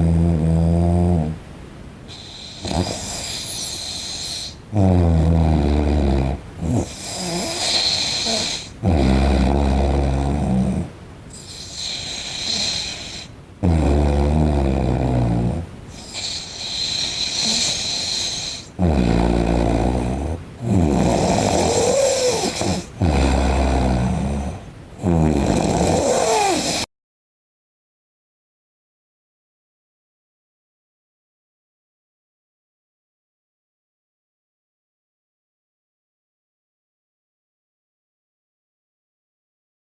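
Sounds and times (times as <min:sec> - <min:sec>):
man snoring loudly: 0:00.0 - 0:01.4, 0:02.1 - 0:26.9.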